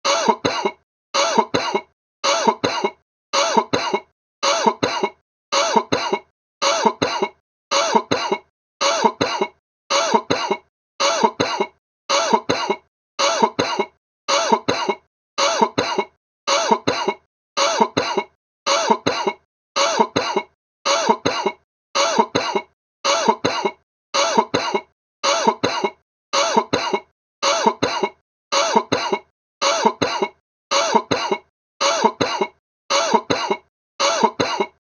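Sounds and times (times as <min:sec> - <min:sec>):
person coughing: 0:00.0 - 0:34.8.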